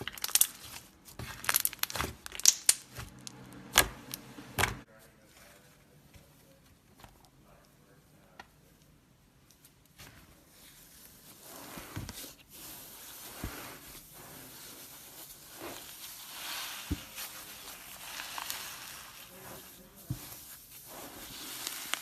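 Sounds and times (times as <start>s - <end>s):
hands squishing slime: 0.0s - 4.7s, 9.7s - 22.0s.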